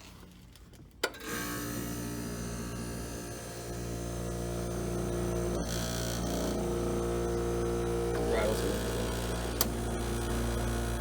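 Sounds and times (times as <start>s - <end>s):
air conditioner humming: 6.4s - 11.0s.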